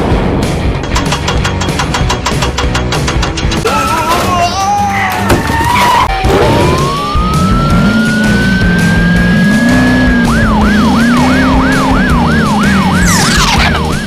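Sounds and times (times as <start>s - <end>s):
emergency vehicle siren: 5.2s - 14.0s.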